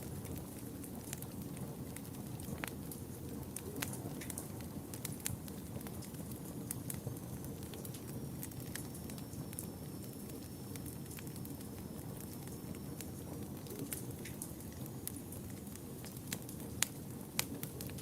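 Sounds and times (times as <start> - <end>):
fire crackling and popping: 0.0 - 18.0
fire flames rumbling: 0.0 - 18.0.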